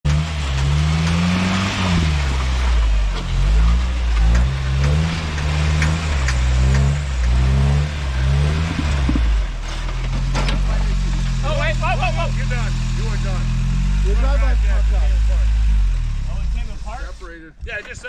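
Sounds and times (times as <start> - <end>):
engine revving: 0.0 - 17.4
clicks and knocks: 3.1 - 7.4, 8.5 - 10.7.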